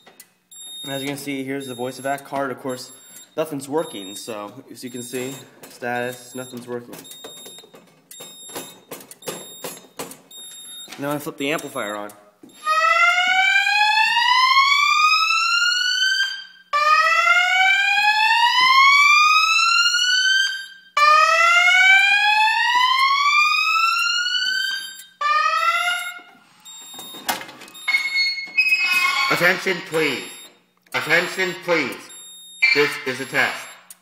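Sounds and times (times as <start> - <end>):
slow whoop alarm tone: 12.6 - 26.2.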